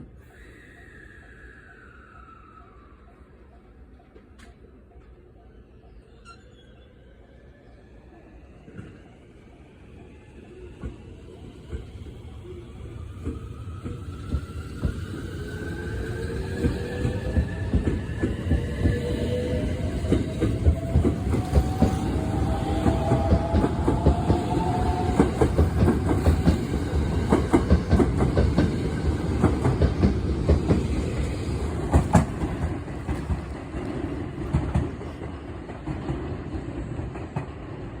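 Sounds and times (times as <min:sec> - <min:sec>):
electric train inverter whining: 0:00.3 - 0:35.2
train wheels clacking over rail joints: 0:20.0 - 0:36.3.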